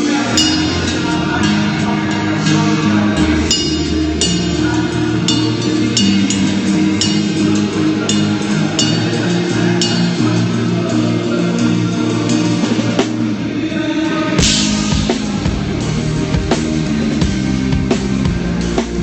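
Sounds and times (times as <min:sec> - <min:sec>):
held guitar chords: 0:00.0 - 0:19.0
rock band playing: 0:00.0 - 0:19.0
cymbal strikes: 0:00.3 - 0:10.4
cymbal crash: 0:00.4 - 0:09.1, 0:14.4 - 0:17.7.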